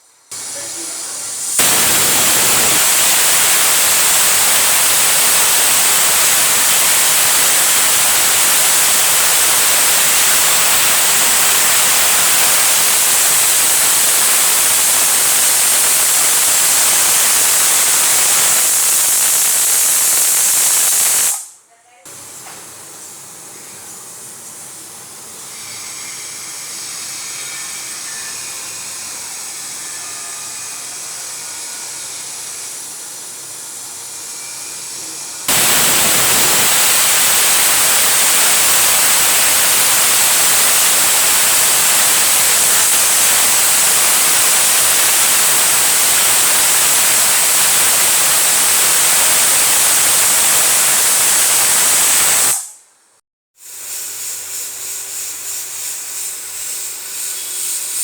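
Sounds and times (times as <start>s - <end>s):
pressure cooker hissing: 0.0s - 21.5s, 35.4s - 52.8s, 53.6s - 58.0s
pressure cooker whistle: 1.6s - 21.5s, 35.5s - 52.8s.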